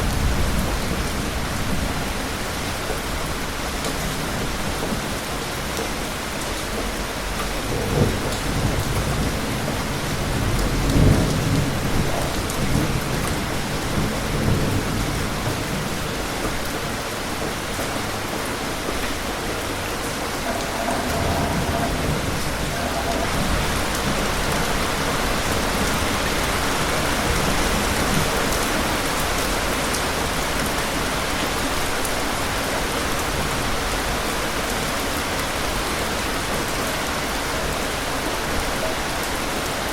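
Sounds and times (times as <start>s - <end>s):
steady rain falling: 0.0s - 39.9s
distant thunder rolling: 19.7s - 28.2s.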